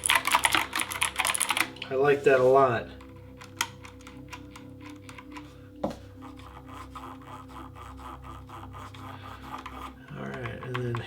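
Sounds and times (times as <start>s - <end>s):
mechanical keyboard clicking: 0.0s - 1.8s, 3.4s - 5.4s.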